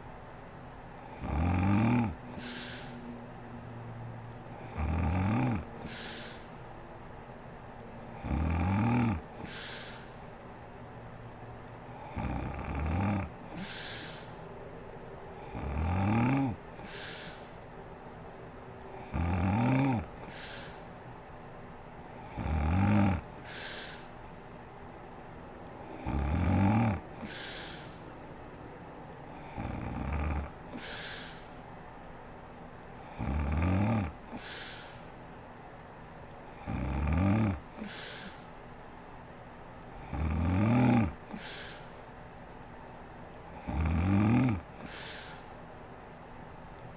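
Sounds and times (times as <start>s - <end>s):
woman snoring: 1.0s - 3.0s, 4.5s - 6.5s, 8.1s - 10.2s, 12.0s - 14.4s, 15.4s - 17.5s, 19.0s - 20.8s, 22.2s - 24.1s, 25.9s - 28.0s, 29.4s - 31.5s, 33.0s - 35.0s, 36.6s - 38.4s, 40.0s - 41.9s, 43.6s - 45.5s
breathy exhale: 2.3s - 3.2s, 4.6s - 6.6s, 8.2s - 10.3s, 13.1s - 14.4s, 15.4s - 17.6s, 19.8s - 20.9s, 23.4s - 24.2s, 27.1s - 28.1s, 30.7s - 31.6s, 34.3s - 35.2s, 37.7s - 38.6s, 41.3s - 42.1s, 44.7s - 45.6s.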